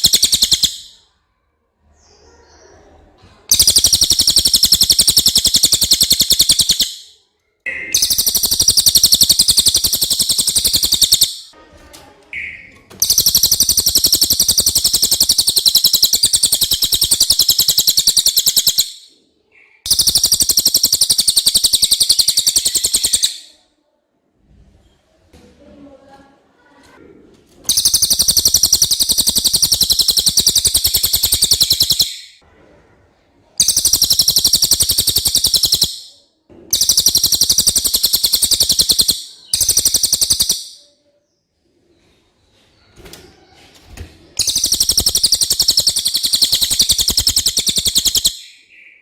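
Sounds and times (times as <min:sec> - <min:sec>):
songbird trilling: 0:00.0 - 0:01.0, 0:03.5 - 0:07.1, 0:07.8 - 0:11.5, 0:12.4 - 0:23.5, 0:27.7 - 0:32.4, 0:33.6 - 0:40.8, 0:44.4 - 0:49.0.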